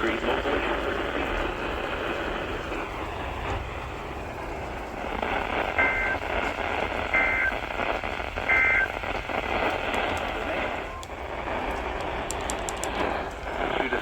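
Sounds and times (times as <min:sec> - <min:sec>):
radio hiss: 0:00.0 - 0:14.0
shrill two-tone digital bursts: 0:05.7 - 0:06.2, 0:07.1 - 0:07.5, 0:08.5 - 0:09.0.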